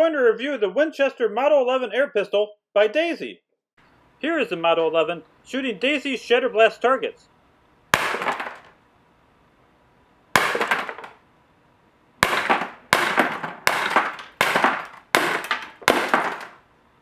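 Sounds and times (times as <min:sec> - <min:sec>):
target shattering: 0:08.0 - 0:08.7, 0:10.4 - 0:11.2, 0:12.2 - 0:16.6
air pistol shots: 0:10.4 - 0:11.1, 0:12.2 - 0:16.6.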